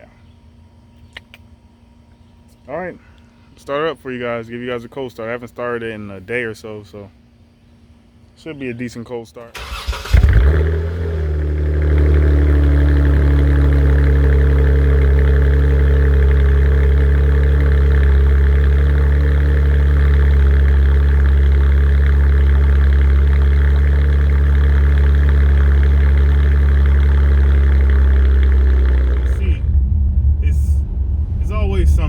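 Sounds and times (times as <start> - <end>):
car engine idling: 9.6 - 32.0.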